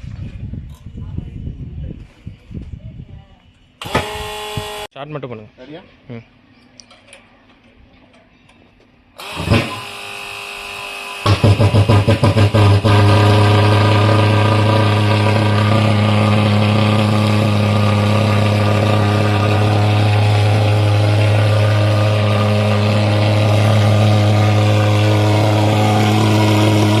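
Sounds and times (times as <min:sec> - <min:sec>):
pulse-jet engine droning: 0:11.0 - 0:27.0.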